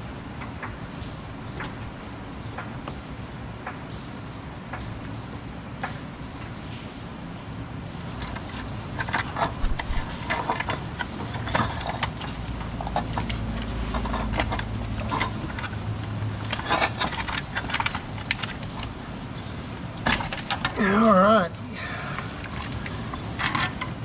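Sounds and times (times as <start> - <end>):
low steady hum: 0.0 - 24.0
metal tools clinking and knocking: 8.1 - 21.1, 22.2 - 24.0.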